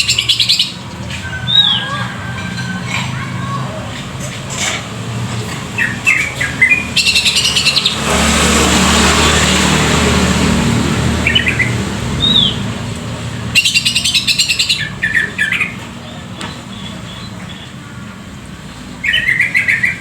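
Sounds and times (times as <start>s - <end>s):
bird chirps: 0.0s - 2.1s, 5.7s - 8.1s, 11.2s - 12.7s, 13.6s - 17.8s, 19.0s - 20.0s
songbird rattling calls: 0.0s - 3.2s, 3.9s - 10.2s, 13.5s - 15.9s.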